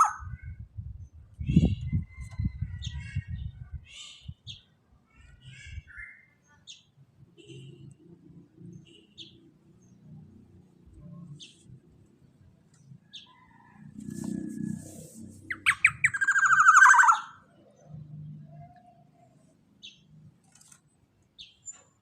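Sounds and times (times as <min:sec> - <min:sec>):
bird harsh rasping call: 0:14.8 - 0:17.4
bird chirping: 0:15.4 - 0:20.2.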